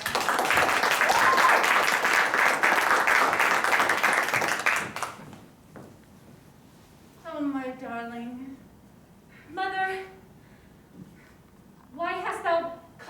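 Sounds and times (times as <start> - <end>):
audience applauding: 0.0 - 5.3.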